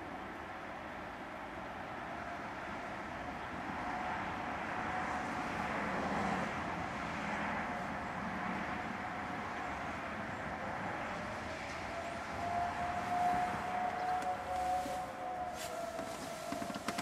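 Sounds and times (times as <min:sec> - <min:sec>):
distant tornado sirens: 0:00.0 - 0:17.0
road traffic passing: 0:00.0 - 0:17.0.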